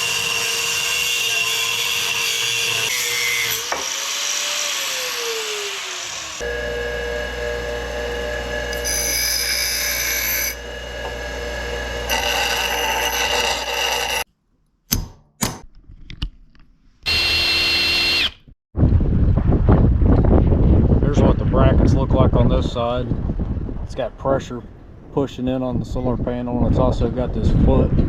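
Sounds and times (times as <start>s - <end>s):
power tool whining: 3.6s - 14.3s, 17.1s - 18.6s
wind buffeting microphone: 18.8s - 28.0s.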